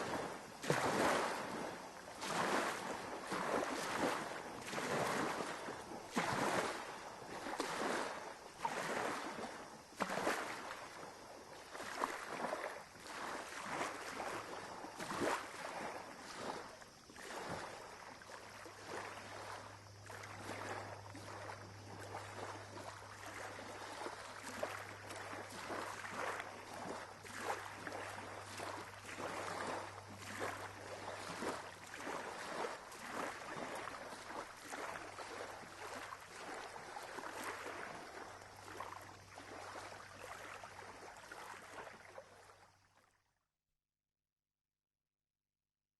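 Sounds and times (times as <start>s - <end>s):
sea water splashing and lapping: 0.0s - 43.2s.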